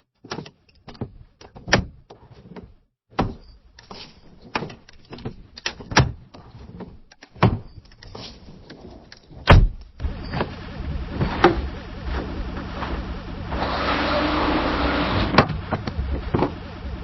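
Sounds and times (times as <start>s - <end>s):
mechanical running noise: 10.0s - 17.0s.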